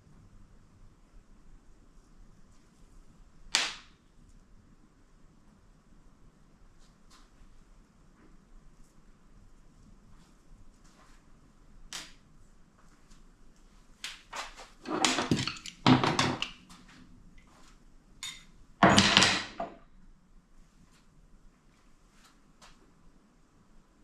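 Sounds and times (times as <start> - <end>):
metal parts clattering: 14.9 - 16.4.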